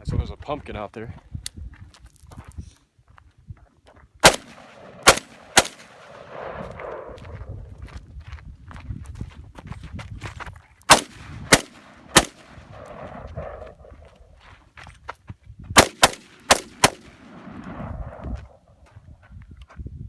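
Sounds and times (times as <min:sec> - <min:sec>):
rifle shots: 0:04.2 - 0:07.1, 0:10.9 - 0:13.2, 0:15.8 - 0:18.2.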